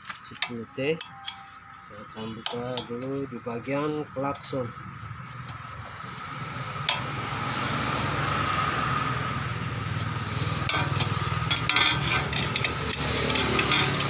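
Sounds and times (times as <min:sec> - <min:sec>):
wrench clicking: 0:10.4 - 0:14.0.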